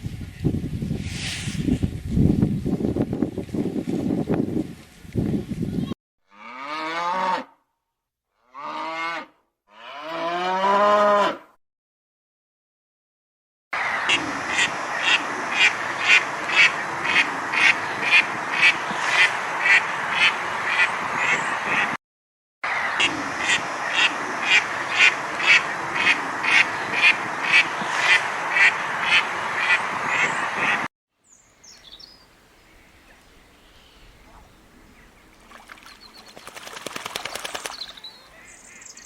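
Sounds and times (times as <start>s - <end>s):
duck quacking: 13.9s - 22.0s, 22.8s - 30.9s
background hiss: 31.3s - 35.4s.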